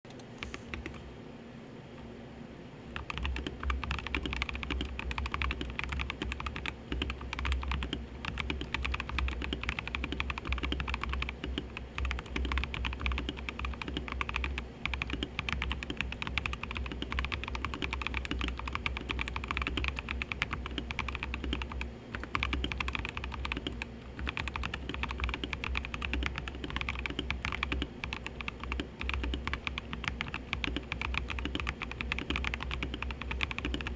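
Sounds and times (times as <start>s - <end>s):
air conditioner hum: 0.0s - 33.9s
mechanical keyboard typing: 2.9s - 33.9s.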